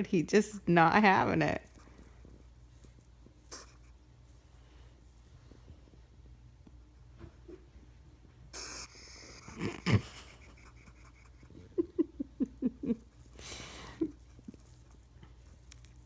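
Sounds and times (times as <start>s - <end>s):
hedgehog huffing: 3.5s - 4.0s, 8.5s - 11.8s.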